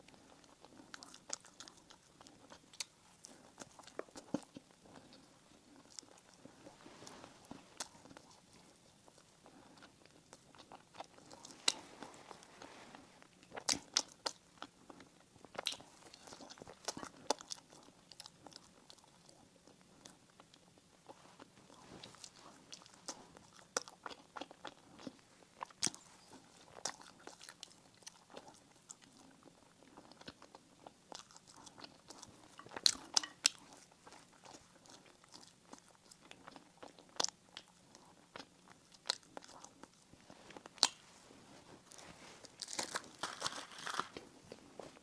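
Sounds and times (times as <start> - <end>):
biting and chewing bread: 0.0 - 45.0
crisp crackling clicks: 42.6 - 44.2.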